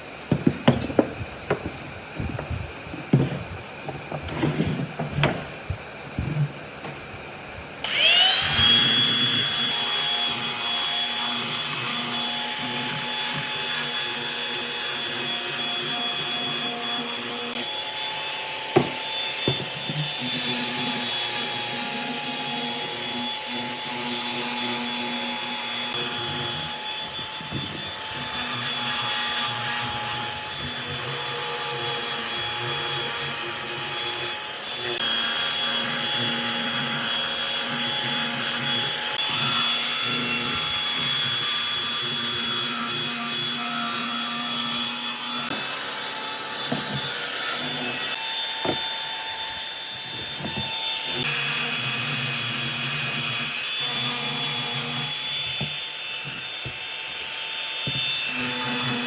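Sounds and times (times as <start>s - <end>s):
power tool whining on wood: 0.0s - 59.0s
handling knocks and clicks: 0.3s - 7.0s.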